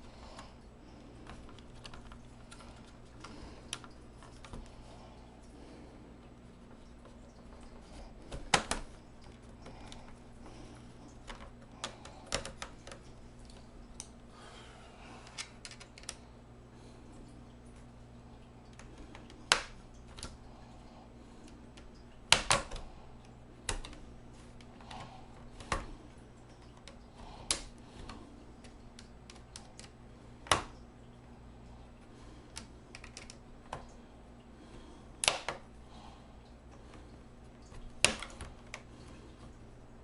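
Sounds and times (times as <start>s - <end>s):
plastic clips snapping loose: 8.3s - 9.8s, 15.3s - 16.2s, 21.8s - 22.9s, 23.6s - 24.0s, 35.2s - 35.7s, 37.7s - 38.9s.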